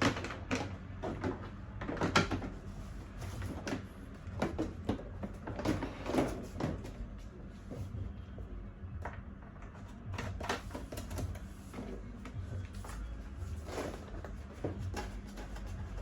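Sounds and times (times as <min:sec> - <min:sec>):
low steady hum: 0:00.0 - 0:16.0
clicks and knocks of chair parts: 0:10.1 - 0:13.0.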